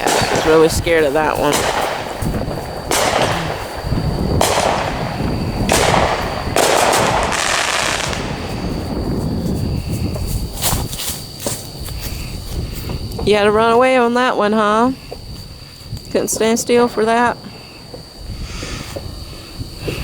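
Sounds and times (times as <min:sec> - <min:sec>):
fireworks exploding: 0:00.0 - 0:11.5.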